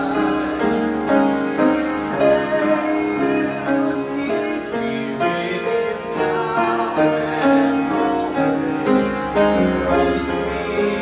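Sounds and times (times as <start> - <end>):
slow ballad with piano: 0.0 - 11.0.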